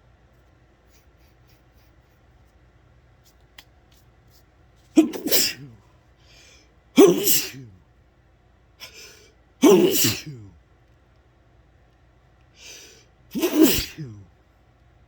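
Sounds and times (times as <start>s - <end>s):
person sneezing: 4.9s - 5.8s, 7.0s - 7.8s, 8.8s - 10.6s, 12.6s - 14.3s.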